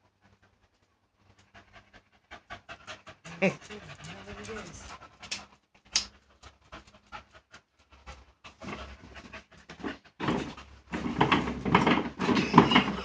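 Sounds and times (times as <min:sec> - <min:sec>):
puppy panting: 0:00.0 - 0:13.0.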